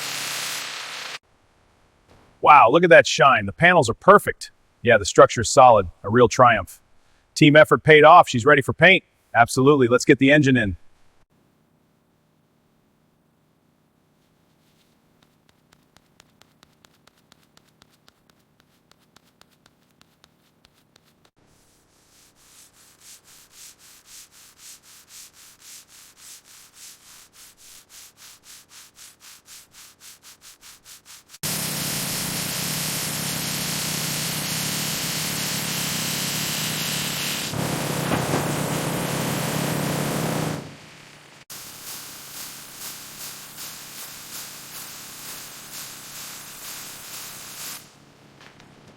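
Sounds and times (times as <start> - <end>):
loud steady hiss: 0.0 - 1.2, 31.3 - 48.0
hand sanding strokes: 14.6 - 40.6.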